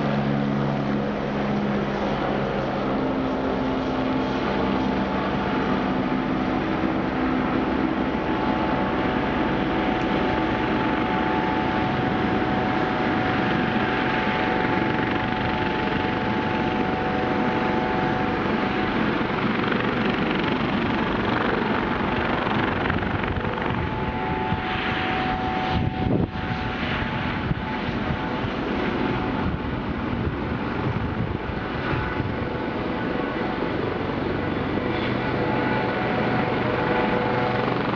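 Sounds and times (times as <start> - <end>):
helicopter rotor and engine: 0.0 - 37.9
faint whining tones: 4.6 - 29.7.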